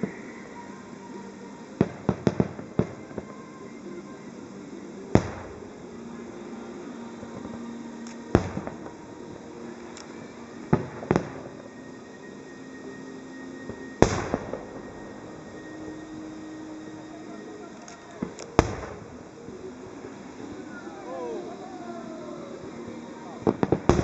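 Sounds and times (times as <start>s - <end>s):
firework shells bursting: 17.8s - 19.6s.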